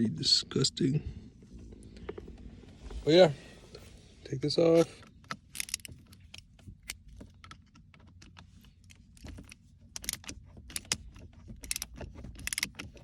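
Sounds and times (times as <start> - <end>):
tool clicking on metal screw: 5.6 - 5.9, 11.6 - 12.8.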